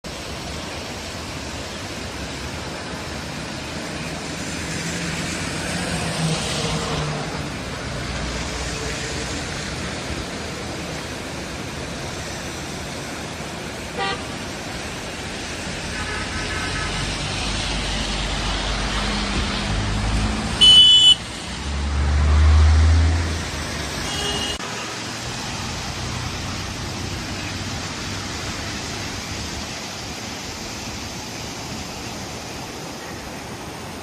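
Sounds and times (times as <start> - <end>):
road traffic: 0.0 - 34.0
vehicle horn toots: 20.6 - 21.2, 24.0 - 24.6.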